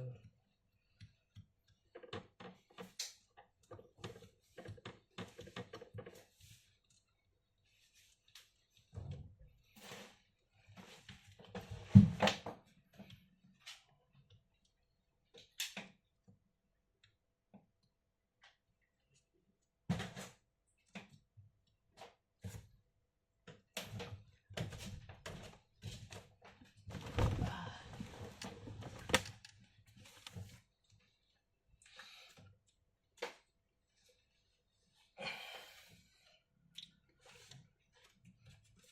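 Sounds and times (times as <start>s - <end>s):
laptop parts clicking and knocking: 28.9s - 29.6s.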